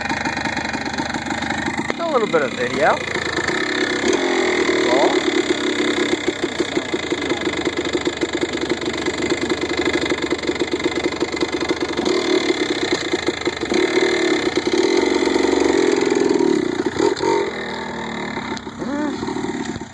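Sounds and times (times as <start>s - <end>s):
two-stroke engine puttering: 0.0s - 19.9s.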